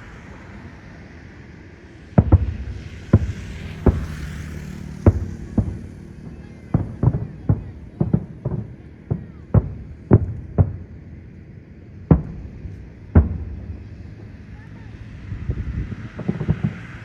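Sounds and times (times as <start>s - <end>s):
firework whistling: 0.0s - 11.3s, 12.1s - 17.0s
firework booms: 2.0s - 11.3s, 12.0s - 17.0s.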